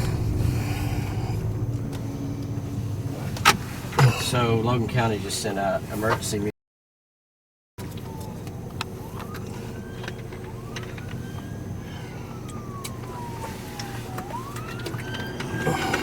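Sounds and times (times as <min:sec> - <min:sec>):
faint siren wailing: 0:00.0 - 0:03.4, 0:07.8 - 0:16.0
vehicle road and engine noise: 0:00.0 - 0:06.5, 0:07.8 - 0:16.0.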